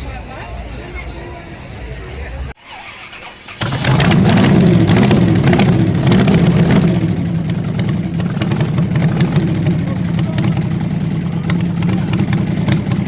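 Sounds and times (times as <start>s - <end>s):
loud engine with throbbing exhaust: 3.5s - 13.0s.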